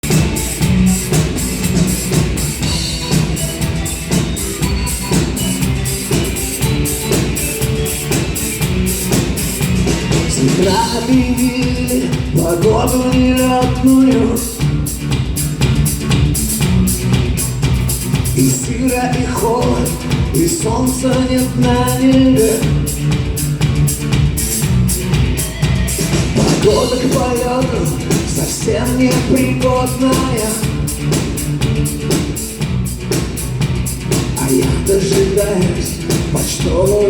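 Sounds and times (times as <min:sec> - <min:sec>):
melodic lead line: 0:00.0 - 0:13.6
bass guitar: 0:00.0 - 0:37.0
drums steady beat: 0:00.0 - 0:37.0.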